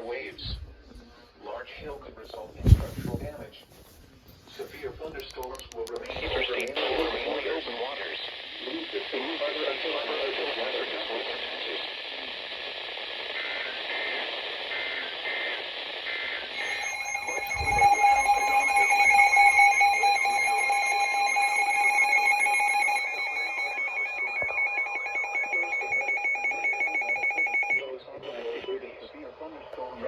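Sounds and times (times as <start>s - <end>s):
radio hiss: 1.6s - 5.4s, 6.0s - 26.3s, 26.9s - 30.0s
warbling data bursts: 16.5s - 27.8s
two-tone attention signal: 16.6s - 27.8s.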